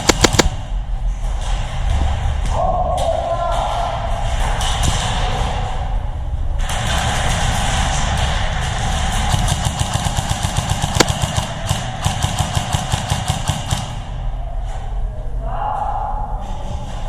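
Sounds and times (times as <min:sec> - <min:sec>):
sharp gunshot crack: 0:00.0 - 0:00.6, 0:09.4 - 0:13.9
airsoft gun firing full-auto: 0:00.0 - 0:00.7, 0:06.7 - 0:14.1.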